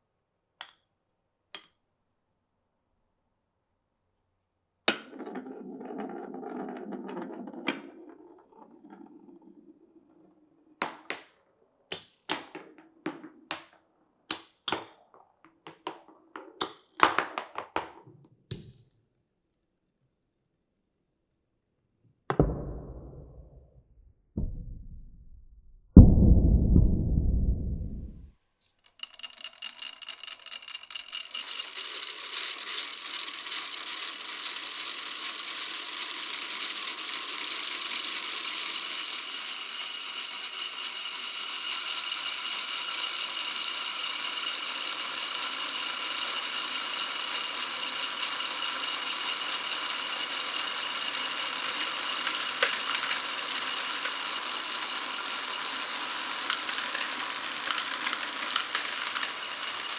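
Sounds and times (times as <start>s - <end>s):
marbles rolling and clattering on tracks: 4.9s - 18.3s, 28.6s - 59.9s.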